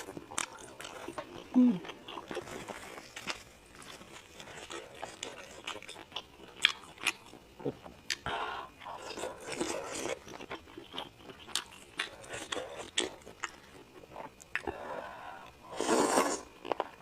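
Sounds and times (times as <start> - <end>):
person chewing crunchy food: 0.0 - 17.0.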